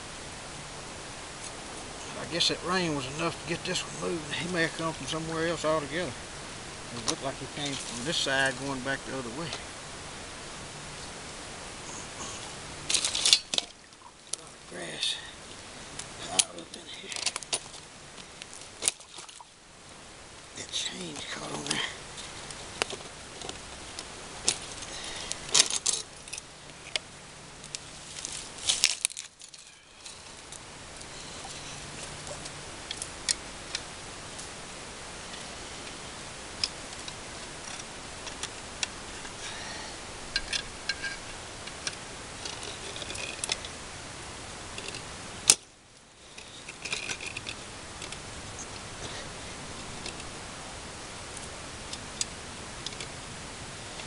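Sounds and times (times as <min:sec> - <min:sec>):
background hiss: 0:00.0 - 0:54.0.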